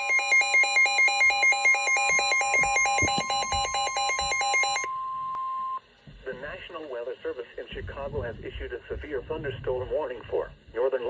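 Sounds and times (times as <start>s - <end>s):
fast-pulsing electronic alarm: 0.0s - 4.9s.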